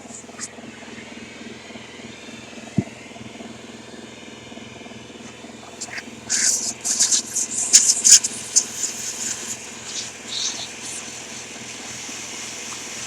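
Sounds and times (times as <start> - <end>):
vacuum motor running: 0.0 - 13.0
hissing and crackling of debris: 5.6 - 13.0.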